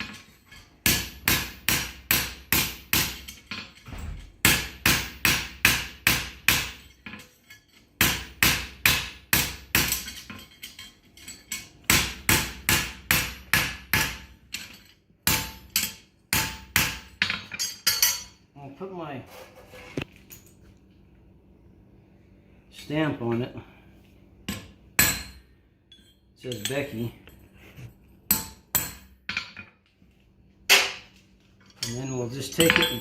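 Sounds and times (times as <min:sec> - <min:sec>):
hammer striking horseshoe on anvil: 0:00.0 - 0:18.4, 0:24.4 - 0:27.4, 0:28.3 - 0:29.7, 0:30.7 - 0:33.0.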